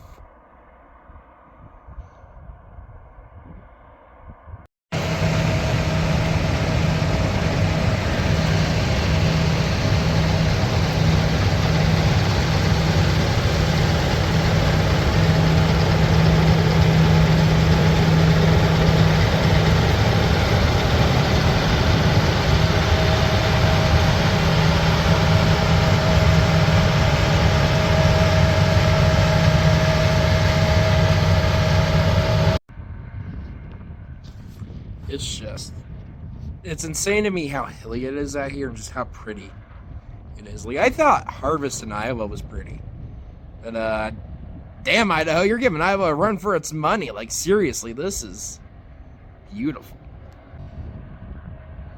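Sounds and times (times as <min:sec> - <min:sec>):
diesel engine running under load: 0:04.9 - 0:32.6.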